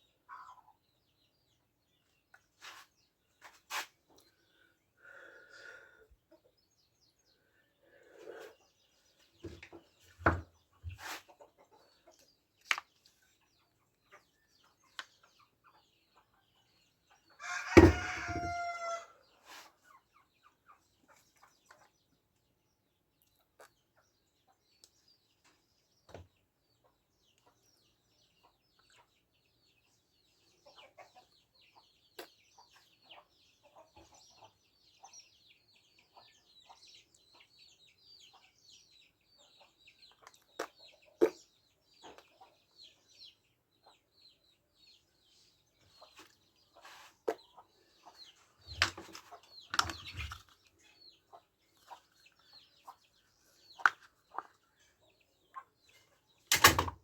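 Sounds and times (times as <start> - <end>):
rooster crowing: 17.4 - 19.2
sharp clicks and knocks: 56.5 - 57.0.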